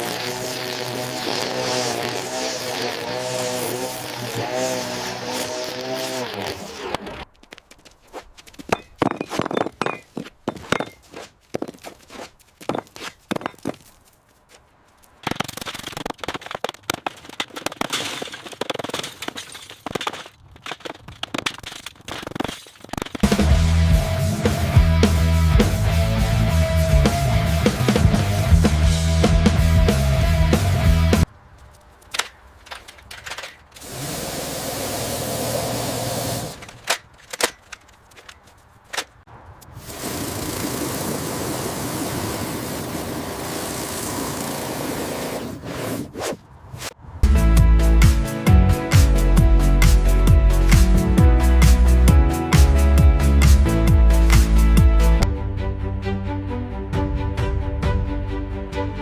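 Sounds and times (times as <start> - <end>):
knocks and clatters: 7.3 - 12.0, 15.2 - 23.3, 32.0 - 33.8
dense crackling and snapping: 15.1 - 23.3.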